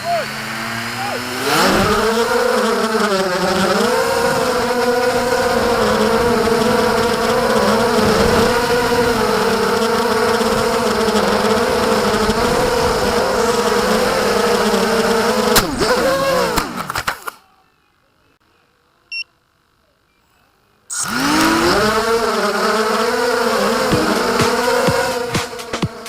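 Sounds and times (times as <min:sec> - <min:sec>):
drone motors whining: 0:00.0 - 0:17.2, 0:20.9 - 0:26.0
sharp clicks: 0:15.5 - 0:17.4.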